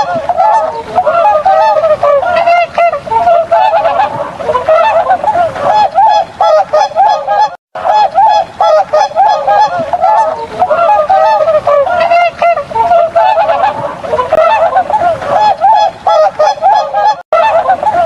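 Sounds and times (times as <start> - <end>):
swans honking: 0.0 - 18.0.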